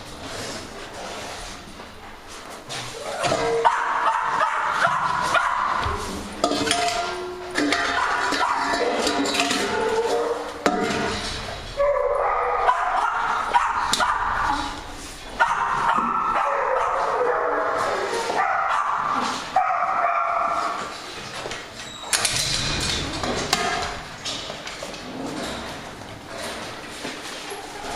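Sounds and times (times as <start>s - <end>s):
dogs barking and whining: 2.8s - 21.1s.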